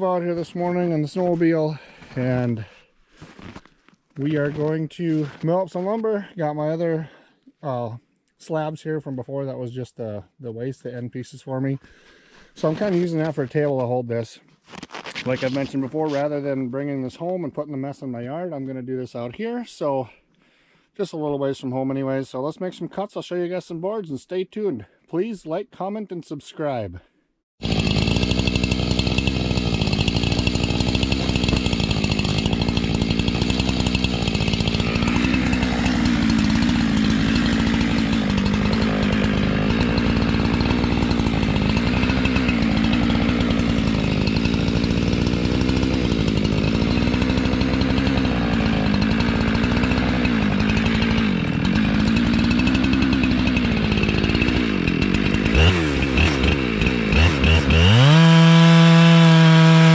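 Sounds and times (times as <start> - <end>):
chainsaw cutting a log: 12.6 - 13.3, 14.8 - 16.5, 27.6 - 59.9.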